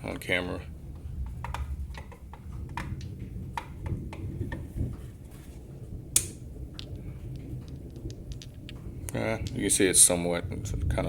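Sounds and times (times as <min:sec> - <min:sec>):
beads clicking and tapping: 0:06.2 - 0:09.7.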